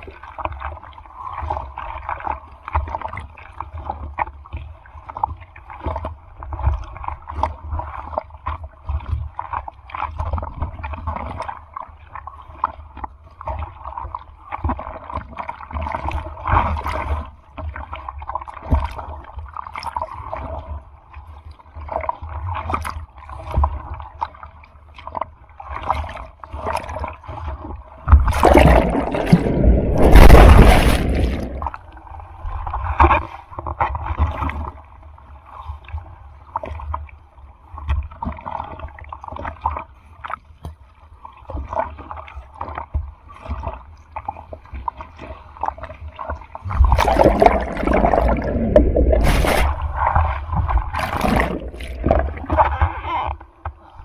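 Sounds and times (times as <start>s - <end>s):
sea water splashing: 25.9s - 34.6s, 45.6s - 54.0s
surf breaking: 28.1s - 31.8s, 46.7s - 52.9s.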